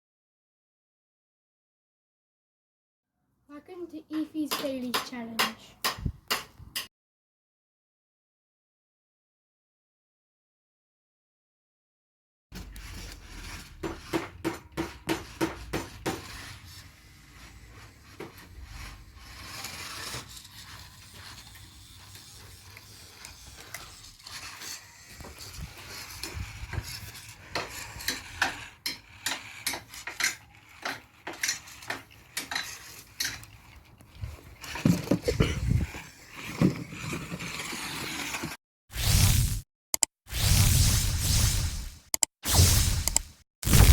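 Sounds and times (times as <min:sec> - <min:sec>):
rc car scraping: 0:12.6 - 0:39.4.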